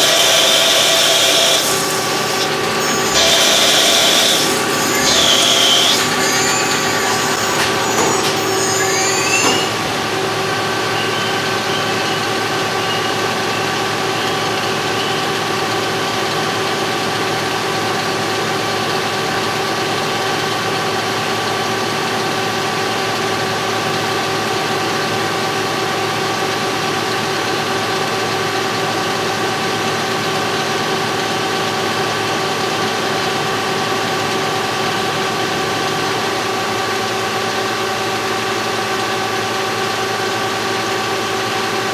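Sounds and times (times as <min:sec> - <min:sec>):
cutting noise with high squeals: 0:00.0 - 0:18.0
machine humming: 0:00.0 - 0:19.7.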